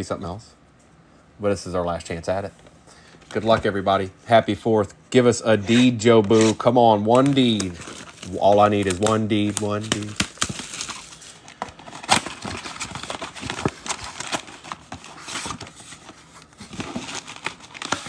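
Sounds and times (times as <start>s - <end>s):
foil card packs crinkling: 3.2s - 4.0s, 5.3s - 18.0s.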